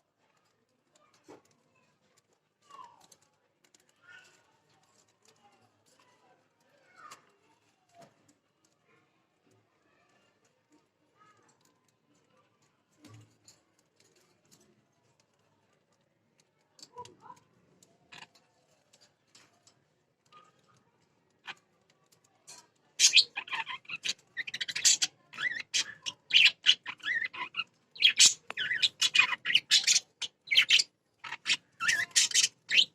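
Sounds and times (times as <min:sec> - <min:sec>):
budgerigars chirping and squawking: 0:23.0 - 0:32.9.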